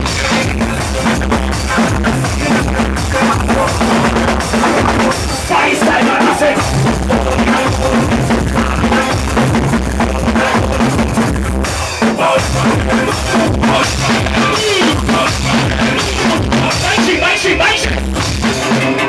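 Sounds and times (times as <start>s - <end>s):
soca music with heavy bass: 0.0s - 19.0s.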